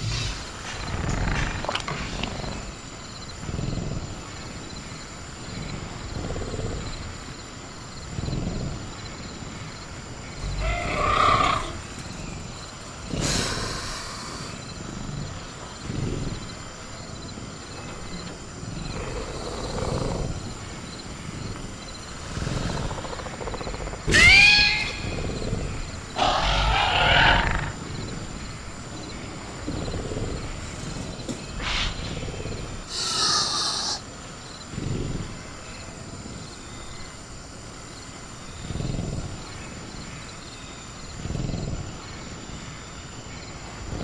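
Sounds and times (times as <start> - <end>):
low rumbling dinosaur growls: 0.0 - 37.4, 38.3 - 44.0
crickets chirping: 0.0 - 44.0
loud pitched creature call: 24.1 - 25.2, 26.2 - 27.7.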